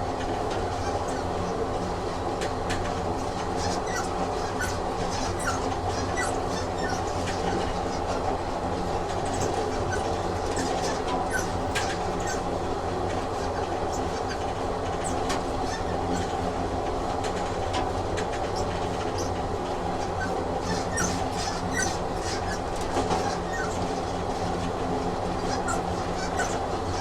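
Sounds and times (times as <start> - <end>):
train rumbling on rails: 0.0 - 27.0
wheel squeals: 3.5 - 8.2, 9.3 - 12.6, 13.3 - 16.4, 18.5 - 24.7, 25.3 - 27.0.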